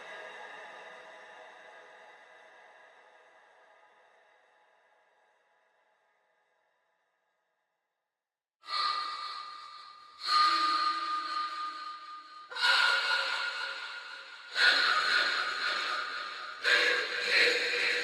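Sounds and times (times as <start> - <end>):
high-pitched breath gasps with echo: 8.7 - 18.0.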